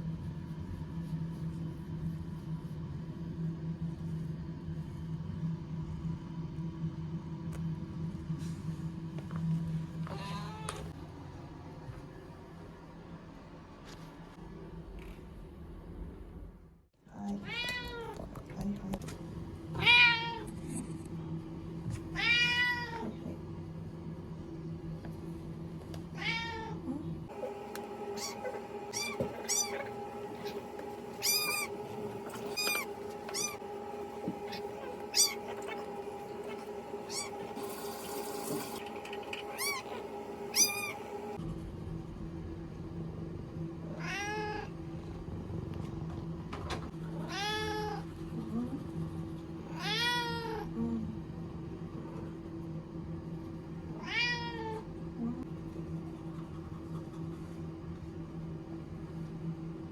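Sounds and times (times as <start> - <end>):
steady hum: 27.1 - 43.6
cat meowing: 28.2 - 30.6, 31.2 - 33.6, 34.4 - 37.4.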